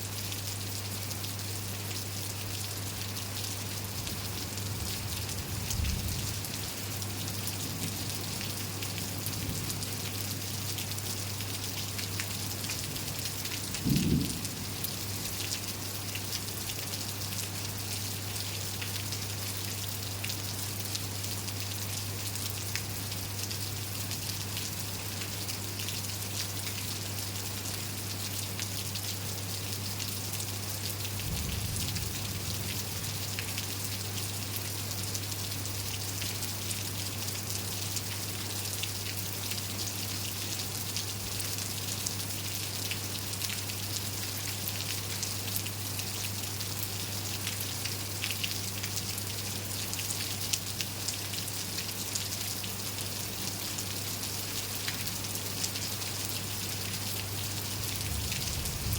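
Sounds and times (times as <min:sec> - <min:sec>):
rain pattering on surfaces: 0:00.0 - 0:58.9.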